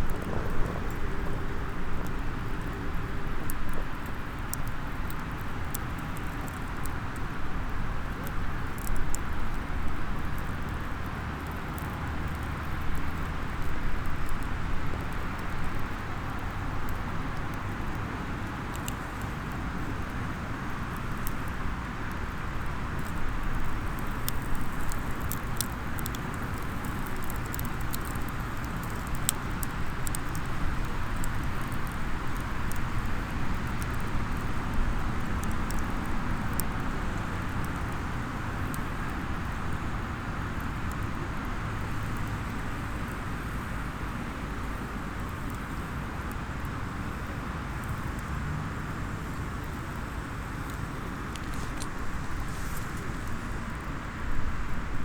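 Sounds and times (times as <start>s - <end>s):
low rumble: 0.0s - 4.2s
campfire crackling and popping: 0.0s - 55.0s.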